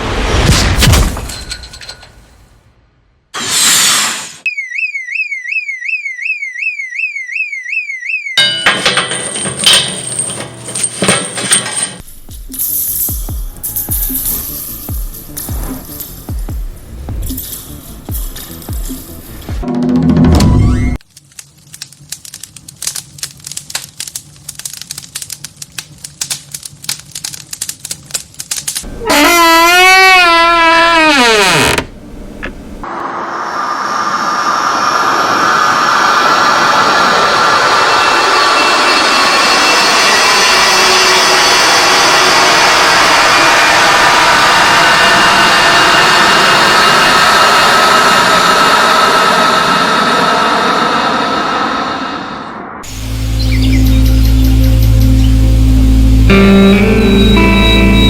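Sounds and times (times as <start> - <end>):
electronic warbling alarm tone: 4.4 - 8.6, 52.8 - 58.0
rapid irregular clicks: 21.1 - 28.8
thin high tone: 37.2 - 41.7, 52.8 - 58.0.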